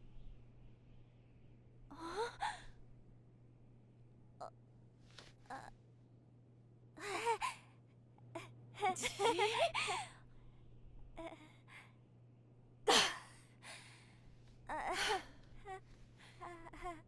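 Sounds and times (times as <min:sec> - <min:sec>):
person whimpering cries: 0:14.7 - 0:17.0.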